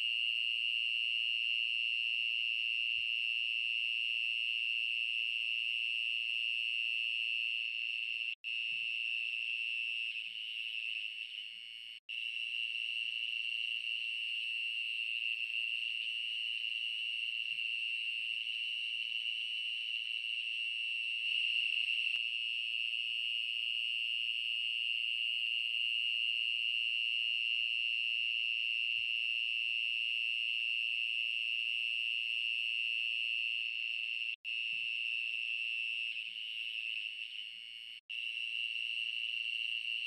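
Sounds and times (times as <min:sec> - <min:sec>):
insects droning: 0:06.2 - 0:26.4, 0:34.5 - 0:40.0.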